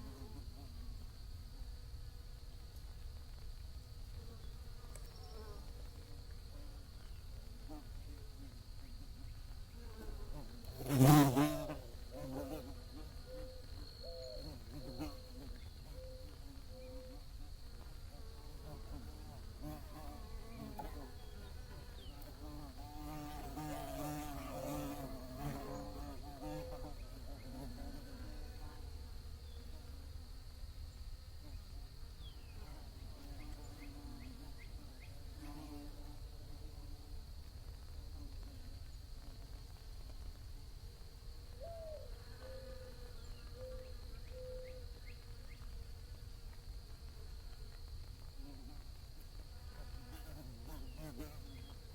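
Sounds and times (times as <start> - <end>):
bird cooing: 41.6 - 43.0.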